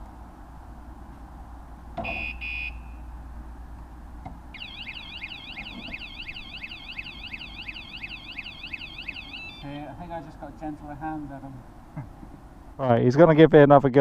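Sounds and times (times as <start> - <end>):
rapid warbling alarm siren: 2.0 - 3.0, 4.5 - 9.7
short high alarm beeps: 2.0 - 3.0, 4.6 - 9.6.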